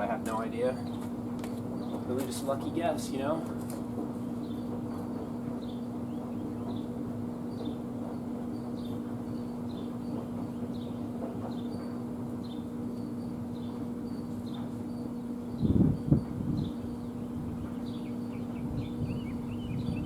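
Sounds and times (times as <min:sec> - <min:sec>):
small bird chirping: 0:16.5 - 0:20.0.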